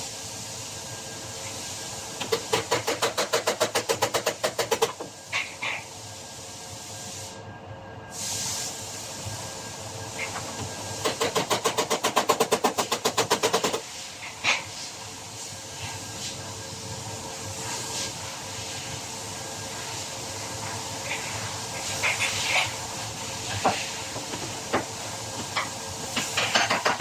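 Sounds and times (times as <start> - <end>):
steady hiss: 8.1 - 11.4, 13.7 - 27.0.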